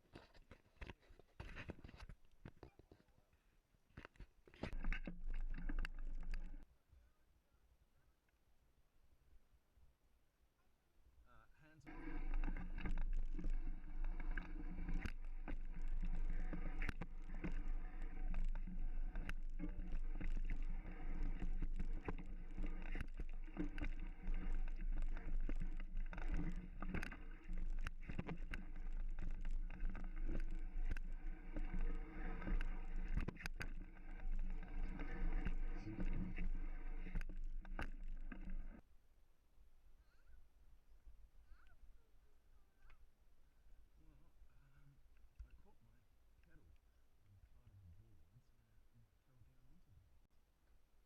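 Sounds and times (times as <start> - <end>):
bike rattling over bumps: 11.9 - 38.8
bike tyres rushing on dirt: 11.9 - 38.8.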